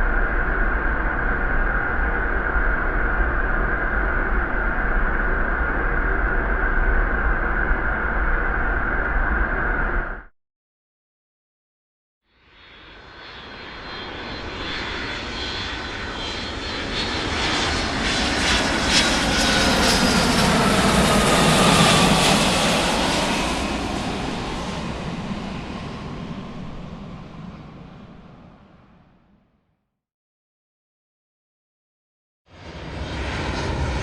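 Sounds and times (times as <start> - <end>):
airplane flying past: 12.4 - 29.4, 32.5 - 34.0.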